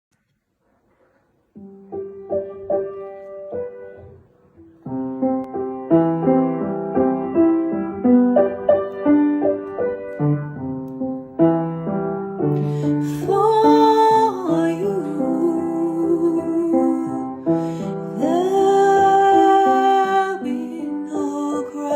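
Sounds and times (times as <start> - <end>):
slow gentle piano: 0.4 - 21.9
person singing: 12.6 - 21.9.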